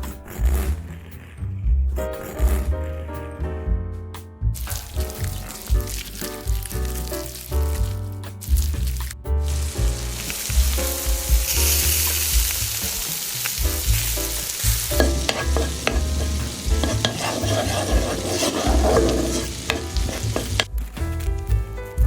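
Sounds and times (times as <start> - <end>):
background music: 0.0 - 22.0
food sizzling in a frying pan: 9.5 - 20.7
stirring in a pan: 9.6 - 20.7.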